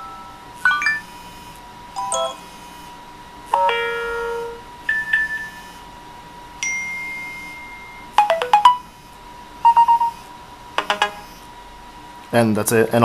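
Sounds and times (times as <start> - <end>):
phone alert tone runs: 0.0 - 1.4, 2.0 - 2.7, 3.6 - 5.8, 6.6 - 8.9, 9.6 - 10.2, 10.8 - 11.4
bell-like ping: 6.6 - 8.1.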